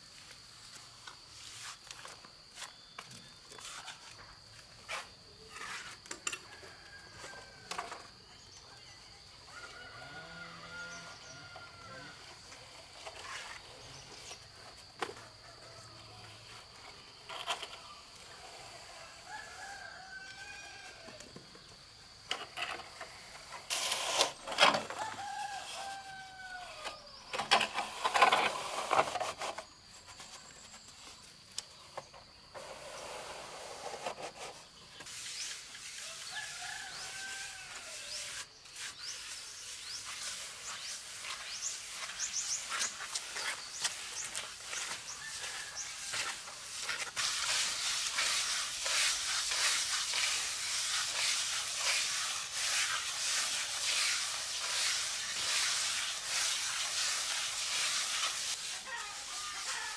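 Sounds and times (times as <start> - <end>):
roosters crowing: 9.4 - 12.5, 18.7 - 21.4, 24.5 - 27.3, 36.0 - 38.4, 43.4 - 46.7, 57.8 - 59.9
noisy scrapes: 22.6 - 26.0.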